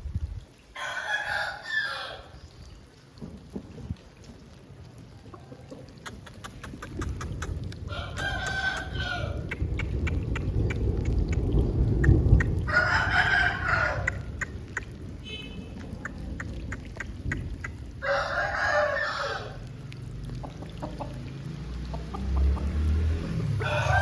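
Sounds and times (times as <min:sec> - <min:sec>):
rooster crowing: 0:00.8 - 0:02.4, 0:07.9 - 0:09.4, 0:12.7 - 0:14.3, 0:18.0 - 0:19.6, 0:23.6 - 0:24.0.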